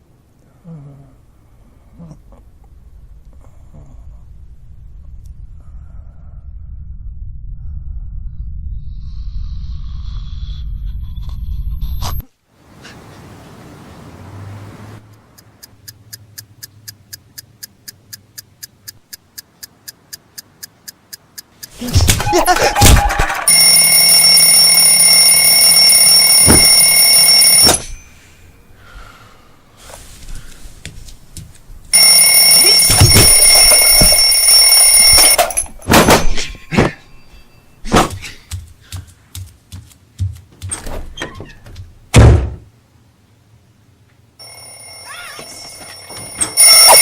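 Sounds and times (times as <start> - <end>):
electronic alarm ringing: 23.2 - 28.2, 32.0 - 35.9, 44.4 - 47.0
loud thump: 40.6 - 42.7.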